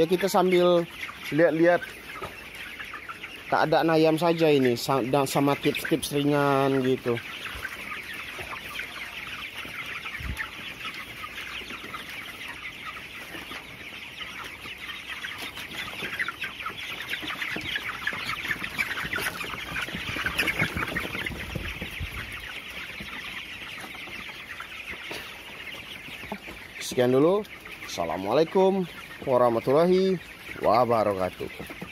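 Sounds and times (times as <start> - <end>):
chickens calling and chirping: 0.0 - 31.9.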